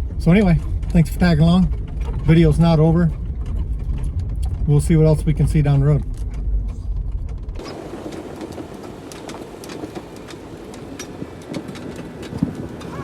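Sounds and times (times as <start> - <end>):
deep engine rumble: 0.0 - 13.0
tires crunching on icy dirt: 0.0 - 13.0
small clicks and rattles: 0.1 - 13.0.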